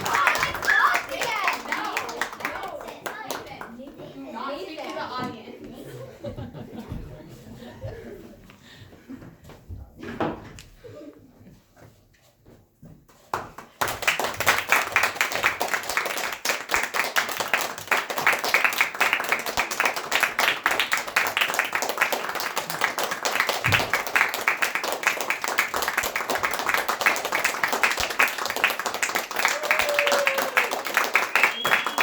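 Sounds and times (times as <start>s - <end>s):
audience applauding: 0.0s - 3.8s, 13.8s - 32.0s.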